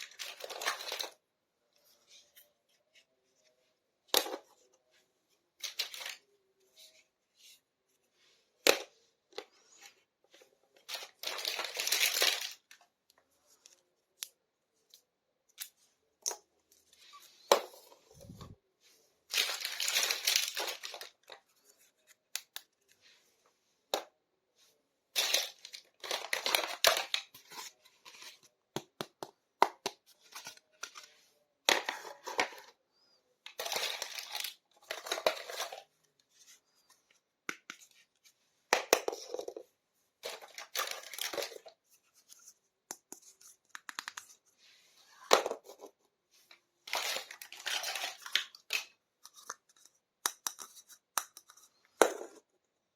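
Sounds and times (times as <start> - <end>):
packaging crinkling and tearing: 19.4 - 21.2.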